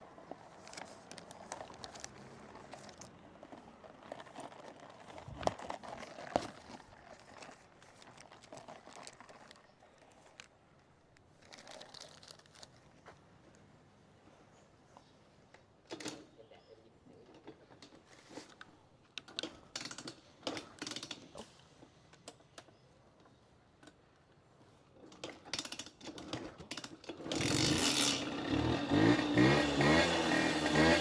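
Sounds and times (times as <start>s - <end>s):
crinkling and clicking handling noise: 0.0s - 13.7s, 17.1s - 27.3s.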